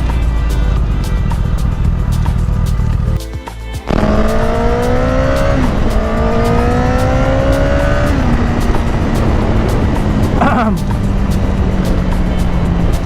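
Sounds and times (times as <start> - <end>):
motorcycle engine accelerating: 3.9 - 13.0.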